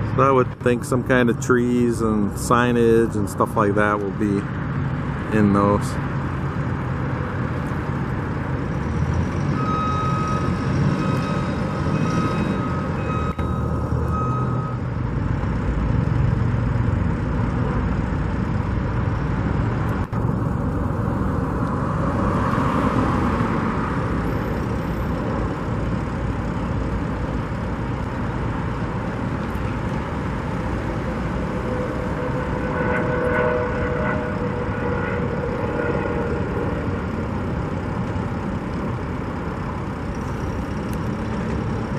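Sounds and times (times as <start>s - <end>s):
heavy vehicle engine running: 0.0s - 41.9s
pitched whine: 6.5s - 15.9s, 16.8s - 41.9s
reversing alarm beeping: 9.2s - 14.9s.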